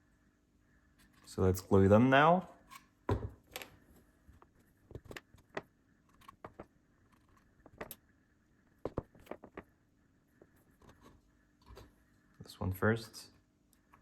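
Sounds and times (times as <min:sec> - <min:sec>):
wooden parts clicking and tapping: 0:04.4 - 0:08.0, 0:08.8 - 0:09.7.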